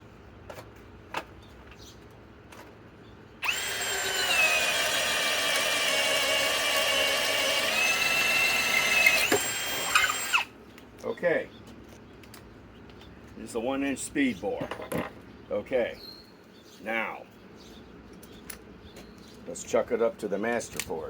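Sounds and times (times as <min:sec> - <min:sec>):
hammer drill motor whine: 0:03.4 - 0:10.5.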